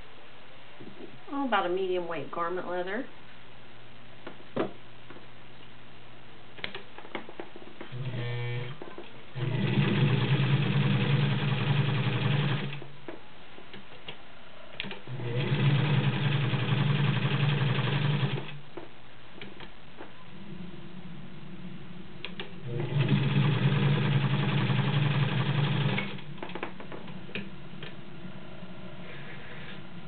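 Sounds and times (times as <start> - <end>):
sewing machine running: 7.9 - 12.8, 14.8 - 18.6, 22.6 - 26.3.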